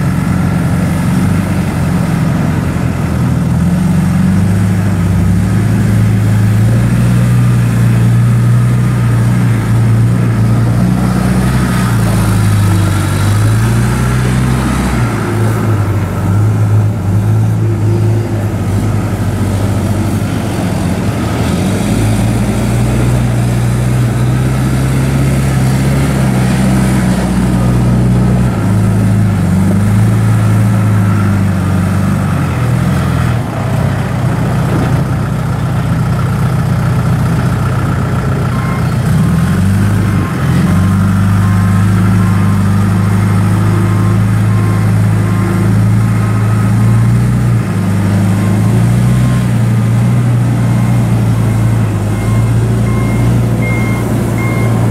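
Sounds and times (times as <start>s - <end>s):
backhoe diesel engine running: 0.0s - 54.9s.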